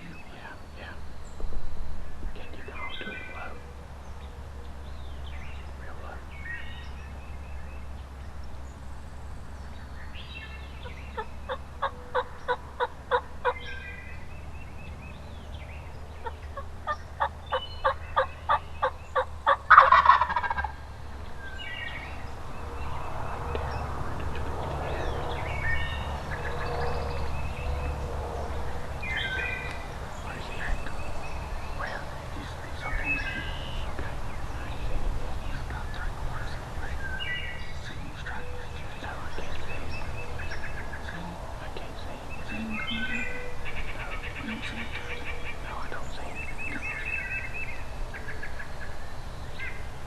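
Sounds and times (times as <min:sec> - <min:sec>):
turkey gobbling: 0:10.8 - 0:13.8, 0:16.2 - 0:20.8
turkey yelping: 0:10.8 - 0:13.8, 0:16.2 - 0:20.8.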